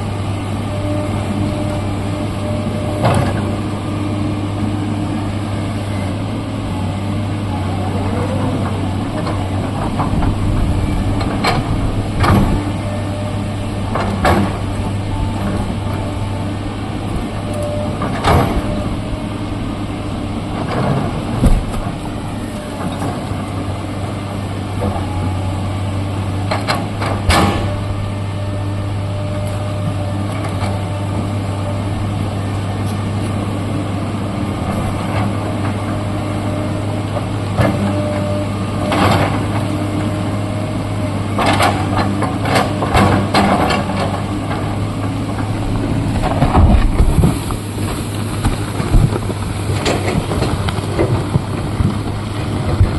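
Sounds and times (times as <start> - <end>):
excavator diesel engine running: 0.0 - 52.9.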